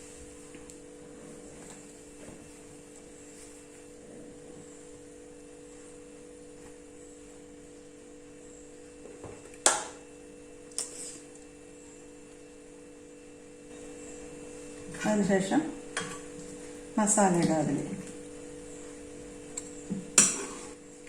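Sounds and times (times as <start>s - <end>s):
steady low hum: 0.0s - 21.0s
spoon clanking against metal pot: 19.6s - 20.7s.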